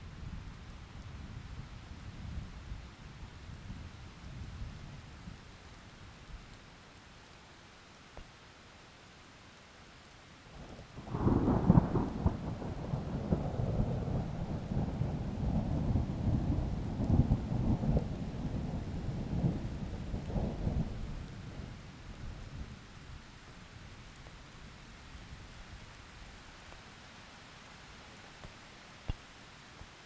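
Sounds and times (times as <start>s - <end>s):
rain hiss: 0.0s - 30.0s
thunder rumbling: 11.0s - 21.8s.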